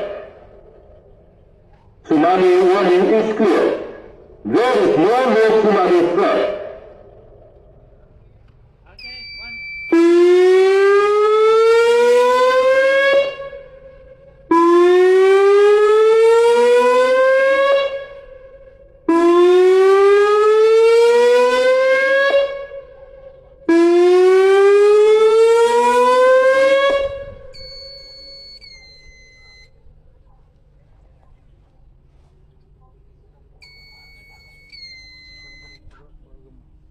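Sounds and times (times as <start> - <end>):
warning siren rising wail: 0.0 - 1.1, 2.0 - 7.9, 9.5 - 29.7.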